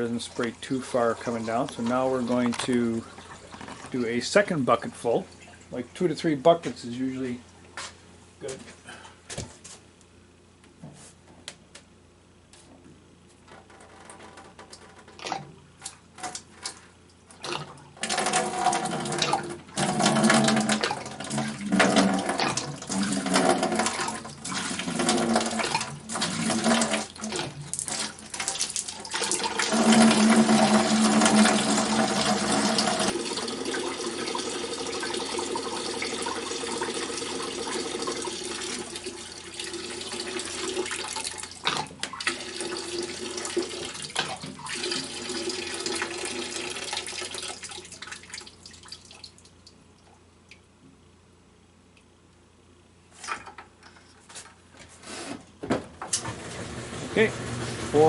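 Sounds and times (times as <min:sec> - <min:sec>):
water running into bucket: 0:14.5 - 0:49.8.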